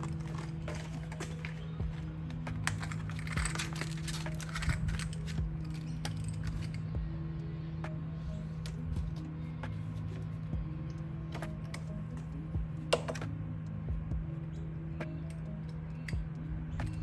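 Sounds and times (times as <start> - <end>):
plastic packaging rattling: 0.0 - 1.8, 2.5 - 6.8
low hum: 0.0 - 17.0
quiet background music: 0.0 - 17.0.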